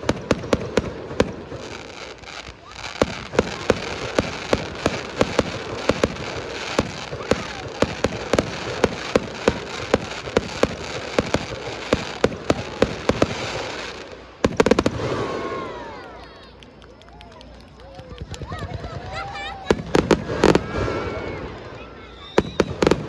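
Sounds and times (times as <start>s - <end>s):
fireworks bangs: 0.0s - 23.0s
fireworks crackle: 0.0s - 23.0s.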